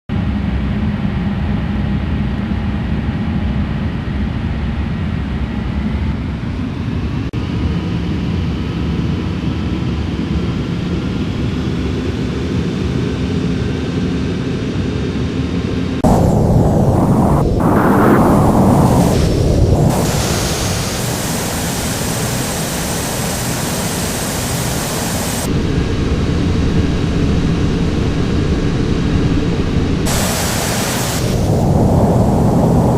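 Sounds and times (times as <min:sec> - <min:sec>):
jet engines rumbling with whine: 0:00.1 - 0:32.9.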